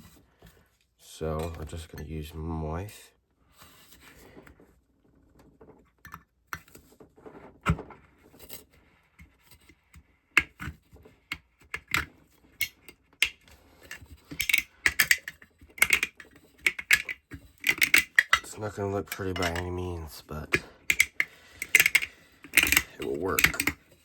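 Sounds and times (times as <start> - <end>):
metallic clicks and scrapes: 10.4 - 24.0.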